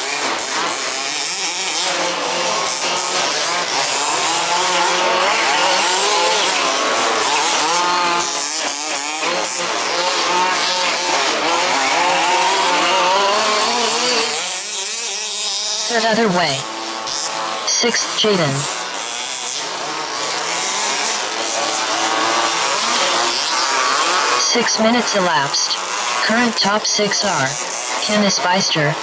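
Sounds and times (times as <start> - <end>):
small two-stroke engines revving: 0.0 - 29.0.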